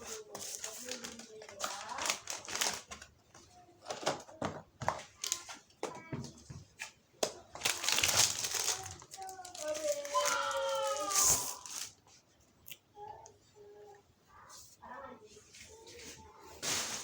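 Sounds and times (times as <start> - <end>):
packaging rustling and crinkling: 0.0 - 4.2, 4.9 - 5.6, 7.3 - 12.0, 16.6 - 17.0.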